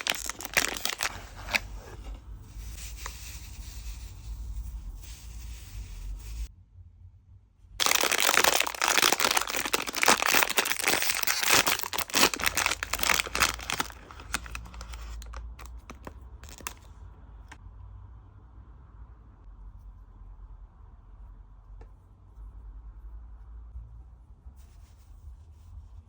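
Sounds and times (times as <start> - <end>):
packaging crinkling and tearing: 0.0 - 2.0, 7.8 - 16.9.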